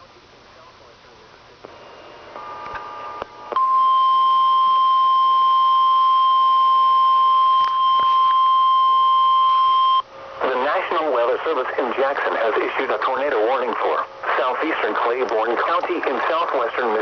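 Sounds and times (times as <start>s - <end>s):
loud steady alert beep: 3.6s - 10.1s.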